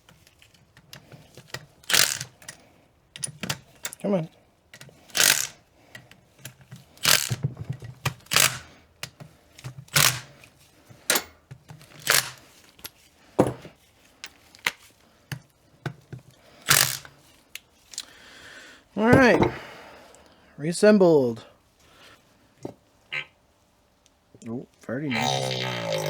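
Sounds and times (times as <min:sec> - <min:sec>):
hand tools knocking on metal: 0:19.2 - 0:19.6.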